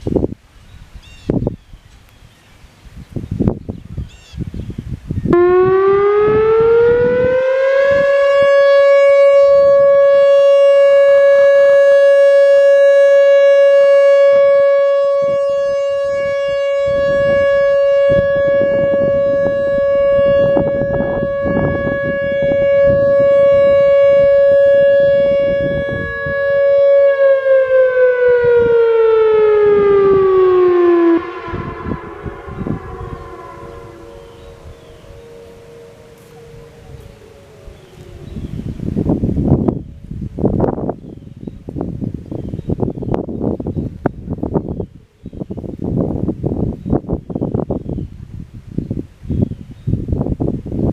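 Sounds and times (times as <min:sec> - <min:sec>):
electronic warning siren: 0:05.3 - 0:41.0.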